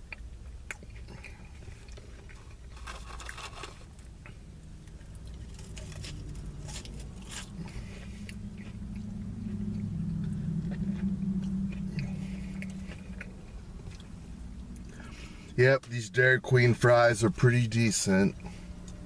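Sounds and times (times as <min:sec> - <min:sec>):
chewing and biting fries: 0:00.0 - 0:15.6
low hum: 0:00.0 - 0:19.0
crunchy mouth clicks: 0:04.2 - 0:15.1.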